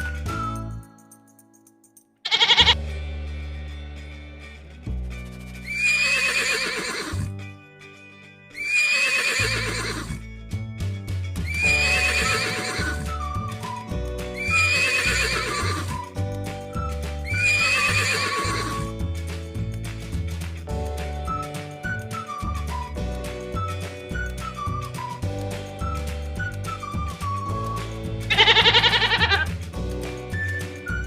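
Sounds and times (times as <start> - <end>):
background music: 0.0 - 31.0
horse whinnying: 2.3 - 2.8, 5.6 - 7.3, 8.6 - 10.2, 11.5 - 13.2, 14.4 - 16.0, 17.3 - 18.9, 28.3 - 29.5.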